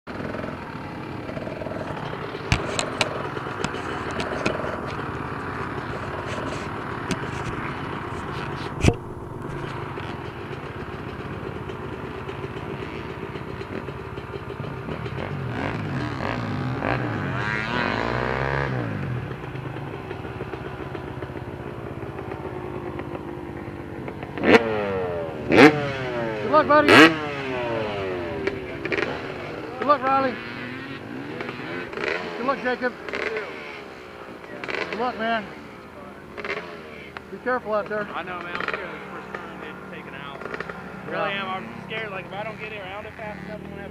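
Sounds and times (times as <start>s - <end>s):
motorcycle engines idling: 0.1s - 43.9s
sharp clicks: 2.4s - 5.0s.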